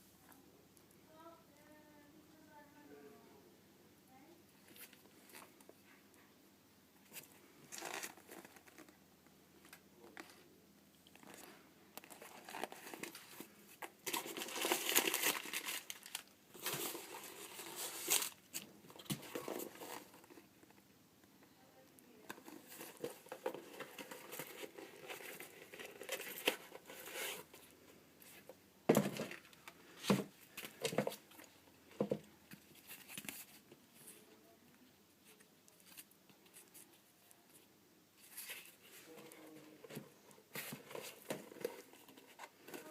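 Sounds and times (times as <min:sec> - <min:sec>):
paper crinkling and tearing: 0:12.1 - 0:18.6.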